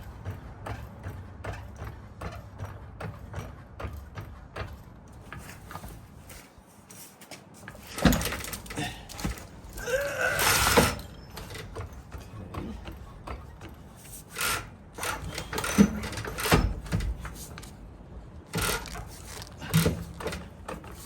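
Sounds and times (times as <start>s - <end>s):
creaking scrape: 18.6s - 21.0s.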